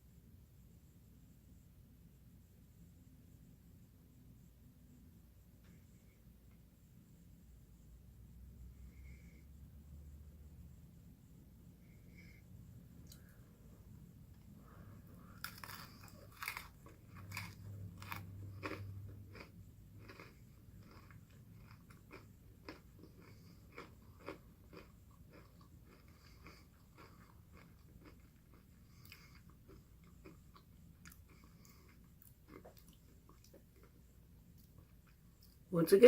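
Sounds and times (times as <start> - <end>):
pretzels crunching: 15.3 - 33.9.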